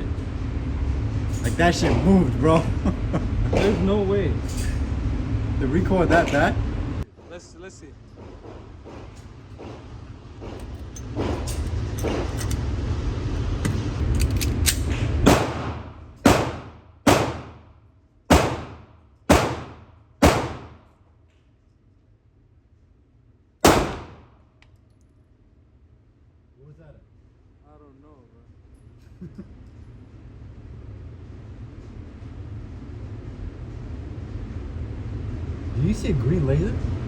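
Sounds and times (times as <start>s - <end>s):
loud low rumble: 0.0s - 7.1s
gunshots with echo: 15.3s - 17.7s, 18.3s - 20.9s, 23.6s - 24.3s.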